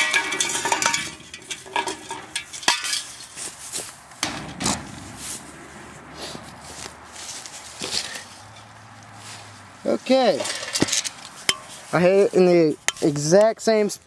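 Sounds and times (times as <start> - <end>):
light clinks and rattles: 0.0 - 8.7
knocks: 4.2 - 6.7.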